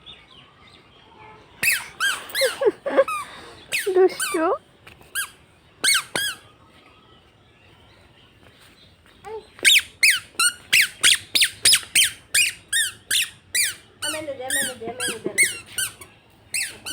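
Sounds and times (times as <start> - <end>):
short high falling squeaks: 1.6 - 2.6.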